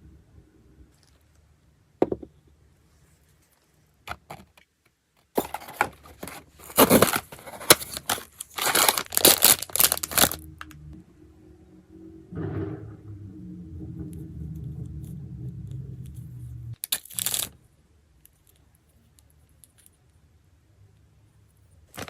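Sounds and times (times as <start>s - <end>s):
plastic wrapper tearing and crinkling: 5.4s - 10.7s, 16.8s - 17.6s.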